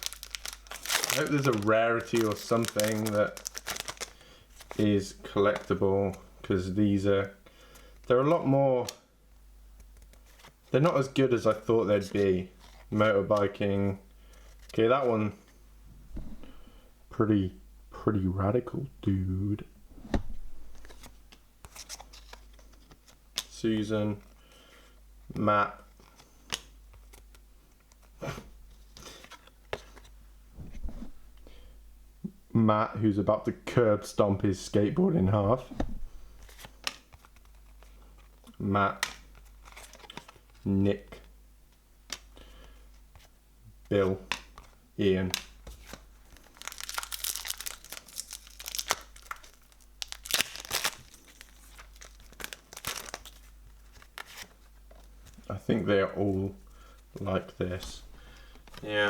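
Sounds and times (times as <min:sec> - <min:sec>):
wrapper crinkling and tearing: 0:00.0 - 0:04.8, 0:45.8 - 0:54.7
cards rustling: 0:00.0 - 0:06.2, 0:20.4 - 0:24.4, 0:36.1 - 0:40.6, 0:44.2 - 0:59.0.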